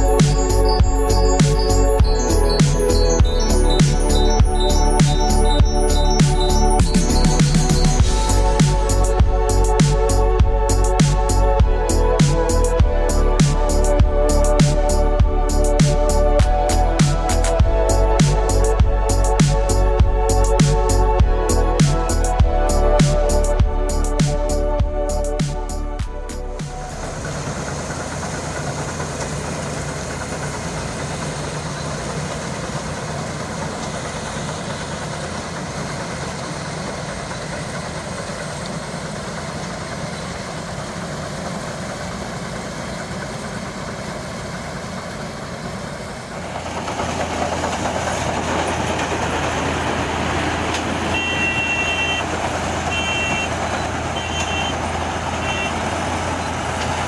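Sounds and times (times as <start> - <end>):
high beeps: 0.0 - 8.1
combine harvester running: 0.0 - 57.0.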